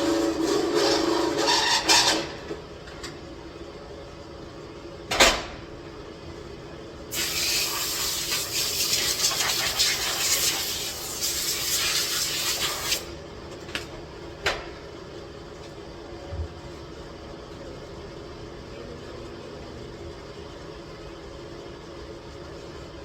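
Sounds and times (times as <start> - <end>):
spraying hiss: 7.1 - 13.1.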